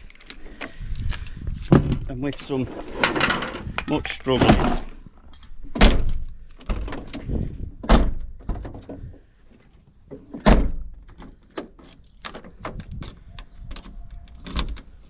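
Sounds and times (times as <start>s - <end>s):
van door slamming: 5.8s - 7.1s, 7.8s - 9.0s, 10.3s - 11.2s
door handle and latch clicking: 10.3s - 15.0s.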